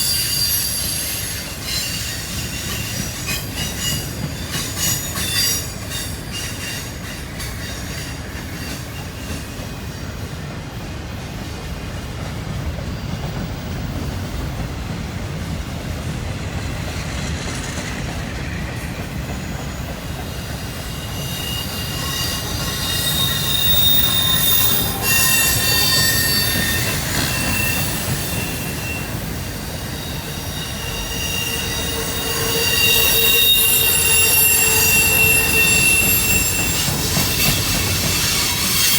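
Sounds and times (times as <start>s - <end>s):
steel wheel squeal: 0.0s - 10.1s, 17.0s - 38.9s
freight train cars rumbling: 0.0s - 38.9s.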